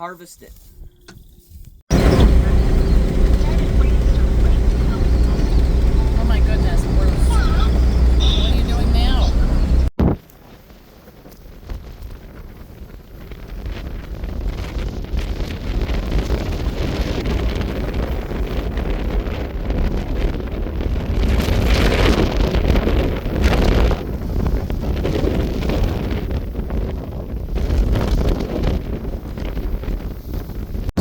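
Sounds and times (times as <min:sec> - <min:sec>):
wind buffeting microphone: 0:00.6 - 0:31.0.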